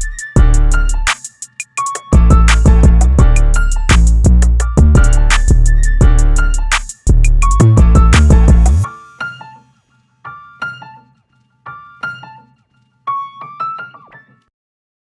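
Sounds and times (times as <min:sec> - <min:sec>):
music with heavy beat: 0:00.0 - 0:08.9.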